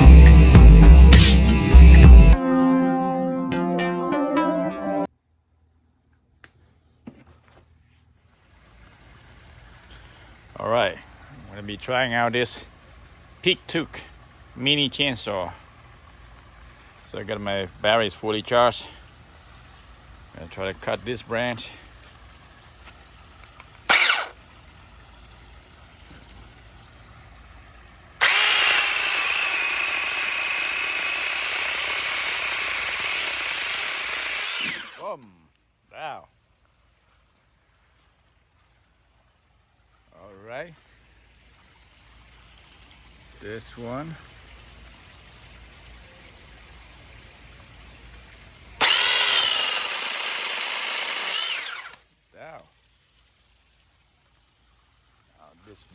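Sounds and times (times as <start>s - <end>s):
chain cutting branch: 23.9s - 24.4s, 48.8s - 52.0s
mini chainsaw motor whining: 23.9s - 24.4s, 28.2s - 35.1s, 48.8s - 52.0s.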